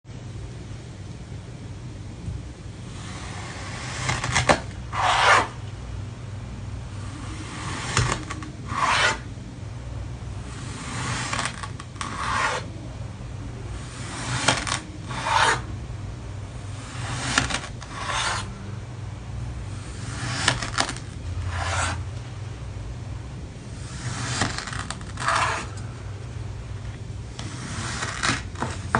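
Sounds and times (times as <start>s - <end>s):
faint low hum: 0.1s - 28.9s
blade scraping through sand: 3.1s - 5.6s, 7.3s - 9.3s.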